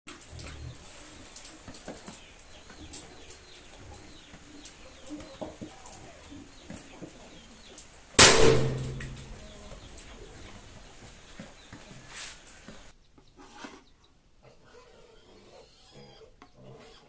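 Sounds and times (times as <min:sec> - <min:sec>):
loud hissing burst: 0:08.2 - 0:11.0.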